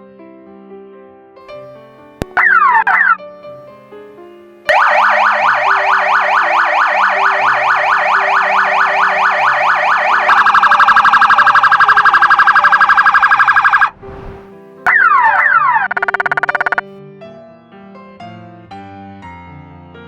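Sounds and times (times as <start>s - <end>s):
emergency siren yelp: 2.2s - 3.2s, 4.7s - 13.9s, 14.9s - 16.8s
fast high pulsing siren tone: 2.2s - 3.2s, 4.7s - 13.9s, 14.9s - 16.8s.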